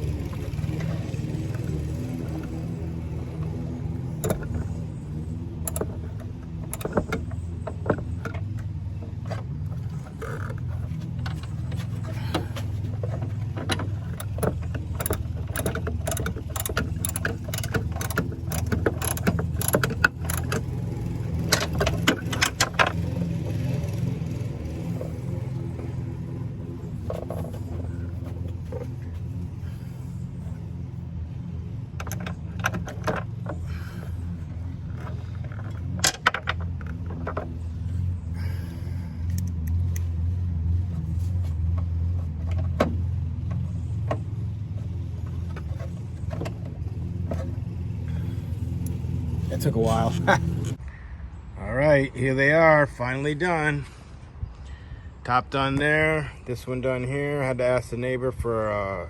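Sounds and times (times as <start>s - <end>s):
metallic clicks of hand tools: 5.6s - 7.4s, 13.6s - 20.8s.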